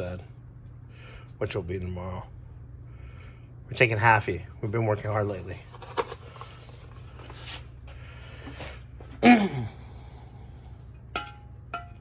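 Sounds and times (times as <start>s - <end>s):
low shop hum: 0.0s - 12.0s
person groaning: 9.2s - 9.9s.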